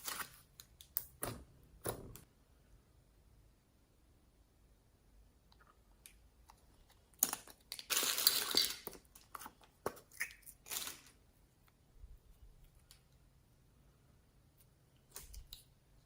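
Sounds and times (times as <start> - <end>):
crackly crushing and crinkling: 6.4 - 11.8.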